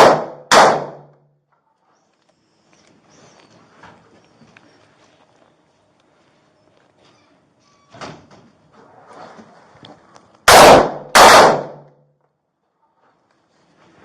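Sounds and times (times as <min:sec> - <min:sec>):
gunshots: 0:00.0 - 0:01.2, 0:10.4 - 0:12.0.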